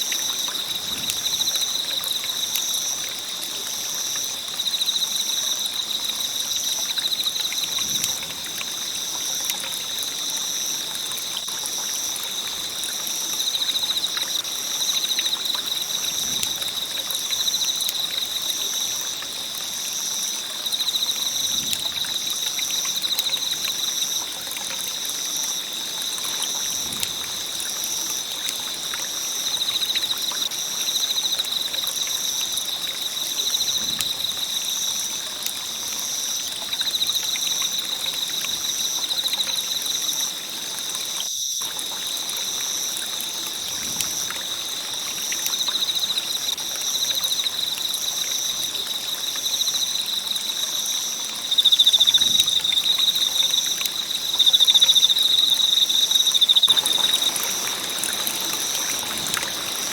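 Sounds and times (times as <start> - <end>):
insect chirring: 41.0 - 59.9.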